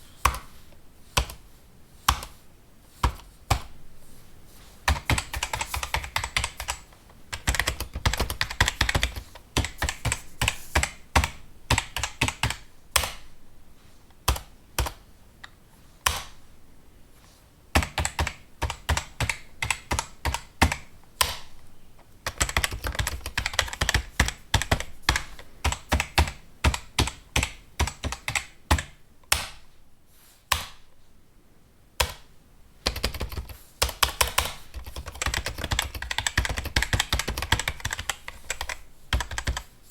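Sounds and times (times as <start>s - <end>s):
fast typing on a keyboard: 4.9s - 13.2s, 17.8s - 21.4s, 22.2s - 29.0s, 32.8s - 39.7s.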